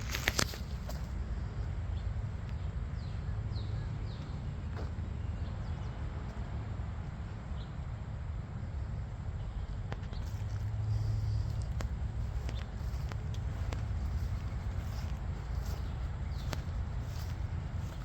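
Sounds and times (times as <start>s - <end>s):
bird chirping: 10.1s - 18.0s.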